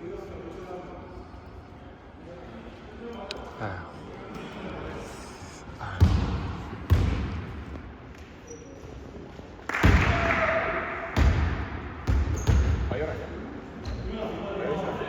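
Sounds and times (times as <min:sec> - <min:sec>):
basketball bouncing on gym floor: 0:06.0 - 0:07.8, 0:11.2 - 0:12.9.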